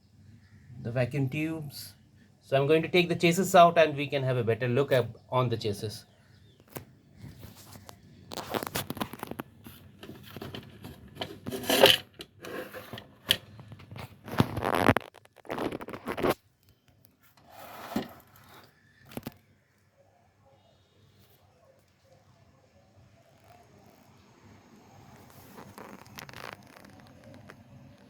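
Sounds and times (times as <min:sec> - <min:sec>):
metal chassis scraping: 0:10.2 - 0:13.4, 0:17.4 - 0:18.7.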